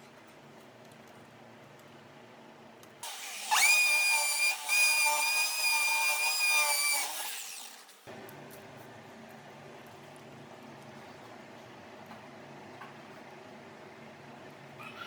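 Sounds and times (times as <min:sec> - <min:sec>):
power tool motor whine: 0:03.0 - 0:07.9.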